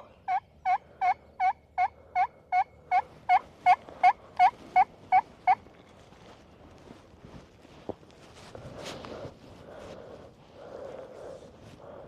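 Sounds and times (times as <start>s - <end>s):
turkey yelping: 0.2s - 5.6s.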